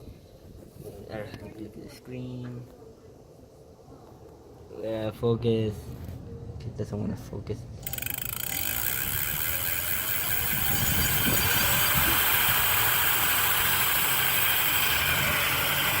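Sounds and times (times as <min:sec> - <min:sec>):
wind and road noise: 0:05.1 - 0:16.0.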